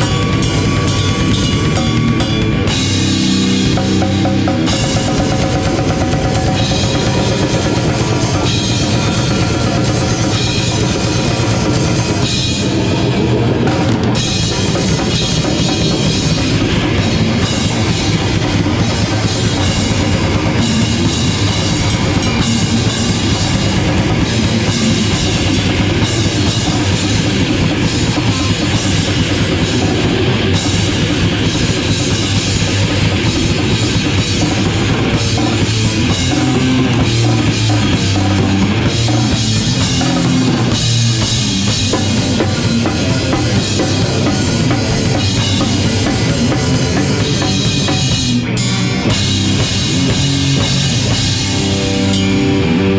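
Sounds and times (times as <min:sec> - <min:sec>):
live rock band playing: 0:00.0 - 0:52.9
bass drum thumping: 0:13.7 - 0:52.5.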